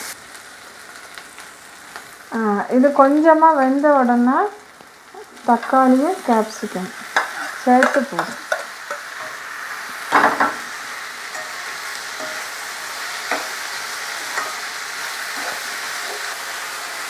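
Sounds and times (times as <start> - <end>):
onions sizzling in hot oil: 0.0 - 17.0.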